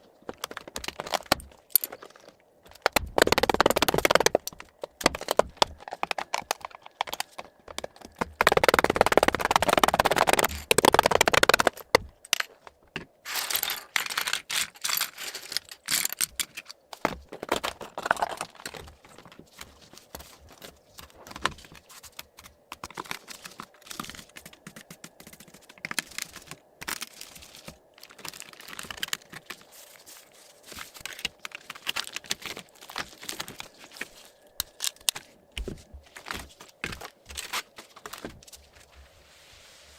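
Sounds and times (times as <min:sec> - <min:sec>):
keyboard keys clicking and rattling: 0:00.2 - 0:29.7.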